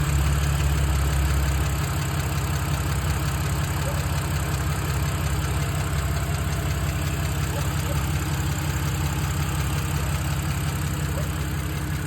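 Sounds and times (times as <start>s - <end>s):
car engine idling: 0.0s - 12.0s
fast even engine ticking: 0.0s - 12.0s.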